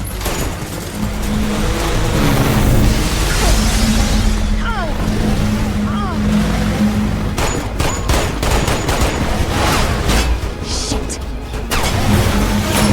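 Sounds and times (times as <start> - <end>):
gunshots: 0.0 - 3.8, 6.2 - 12.9
film music: 0.0 - 12.9.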